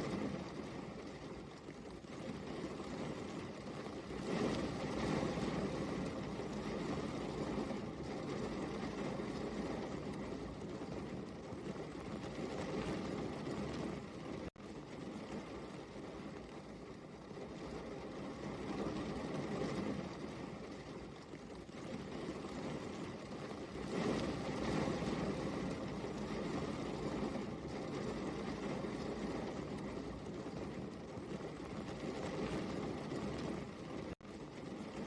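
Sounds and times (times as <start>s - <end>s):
rain falling: 0.0s - 17.0s, 17.6s - 35.0s.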